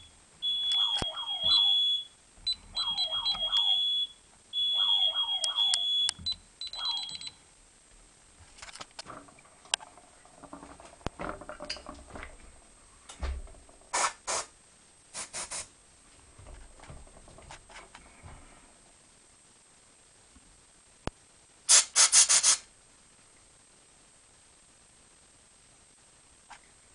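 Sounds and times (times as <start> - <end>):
smoke detector alarm beeps: 0.0 - 7.4
aerosol can spray bursts: 13.9 - 14.5, 15.2 - 15.7, 21.7 - 22.7.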